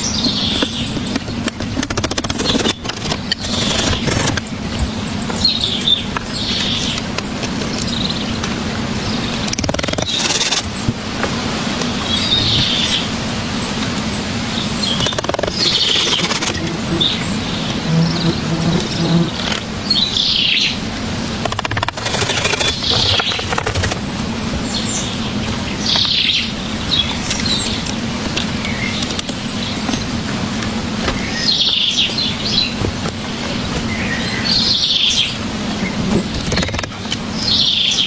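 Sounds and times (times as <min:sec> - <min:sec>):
sharp clicks and knocks: 0:00.5 - 0:04.9, 0:09.5 - 0:11.4, 0:15.0 - 0:17.0, 0:21.4 - 0:24.3, 0:36.3 - 0:37.2
small birds chirping: 0:12.0 - 0:28.0, 0:31.2 - 0:38.0.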